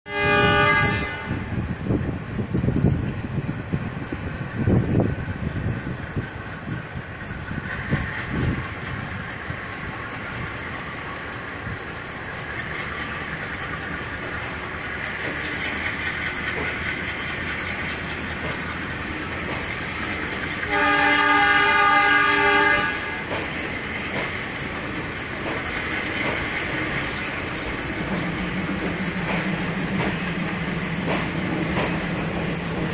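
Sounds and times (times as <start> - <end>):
train horn: 0.1 - 1.5, 20.7 - 23.3
train rumbling on rails: 0.1 - 32.9.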